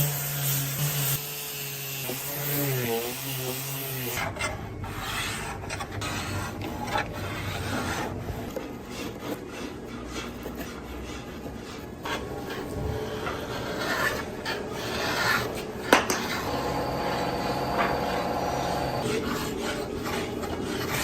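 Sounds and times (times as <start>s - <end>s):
wood rasping: 0.0s - 21.0s.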